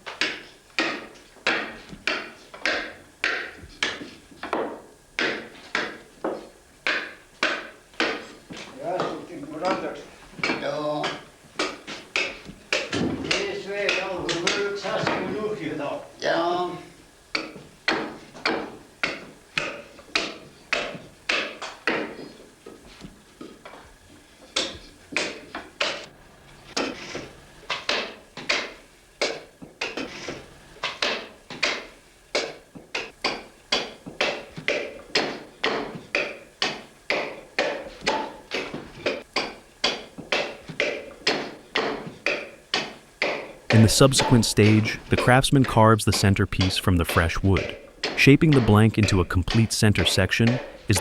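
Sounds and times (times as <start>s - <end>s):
hand tool striking wood: 0.1s - 15.4s, 17.3s - 22.3s, 26.8s - 43.6s, 44.2s - 44.8s, 47.6s - 48.8s.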